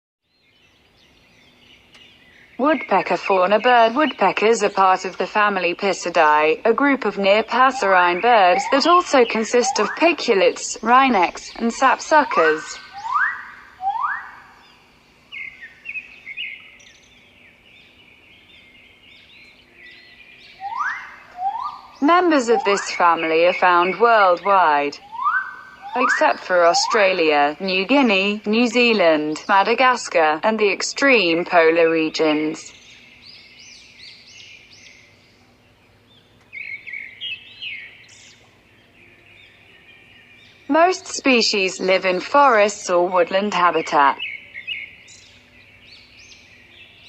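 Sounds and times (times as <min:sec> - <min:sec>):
birds chirping and trilling: 0:00.2 - 0:47.0
faint background hiss: 0:00.3 - 0:47.0
rising whistled bird note: 0:12.2 - 0:14.7, 0:20.5 - 0:22.0, 0:25.0 - 0:27.1.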